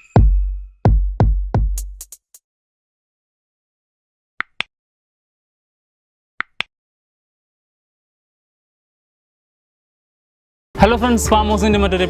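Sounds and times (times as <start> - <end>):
drum machine hits: 0.2 - 2.3.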